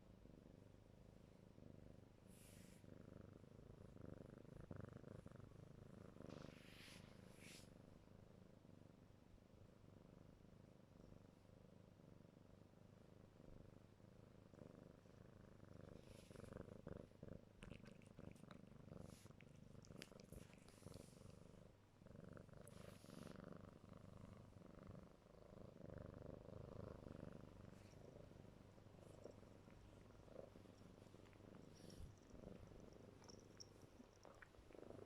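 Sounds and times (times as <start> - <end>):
kitten purring: 0.0 - 35.0.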